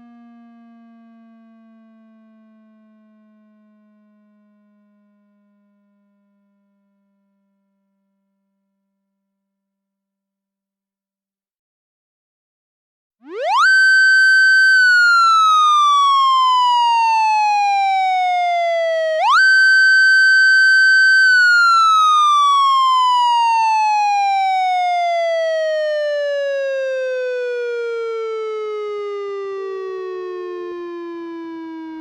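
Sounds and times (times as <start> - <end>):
police motorcycle siren wailing: 13.2 - 32.0.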